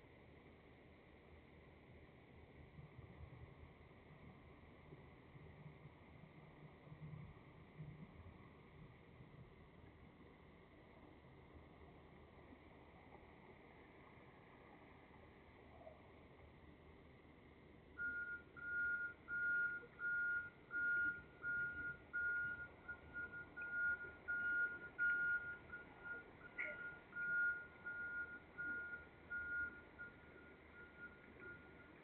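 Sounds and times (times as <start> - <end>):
truck reversing alarm beeping: 18.0 - 32.0.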